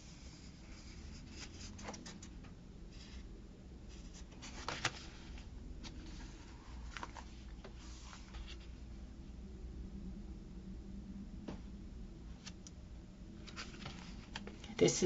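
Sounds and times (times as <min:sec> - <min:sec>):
paper rustling: 0:00.1 - 0:02.4, 0:03.9 - 0:08.8, 0:13.4 - 0:15.0.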